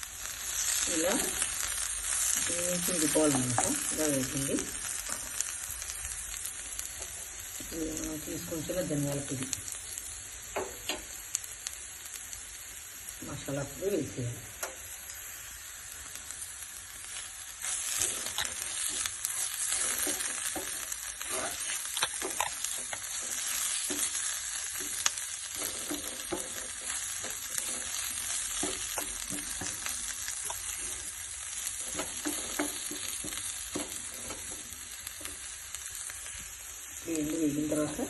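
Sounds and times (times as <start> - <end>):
vegetables sizzling in oil: 0.0 - 38.0
spatula scraping a pan: 17.0 - 35.4.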